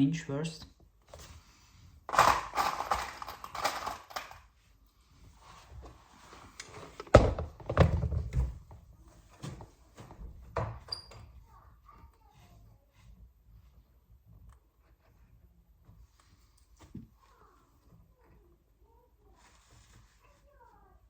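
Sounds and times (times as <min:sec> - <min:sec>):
rustling: 0:19.2 - 0:21.0.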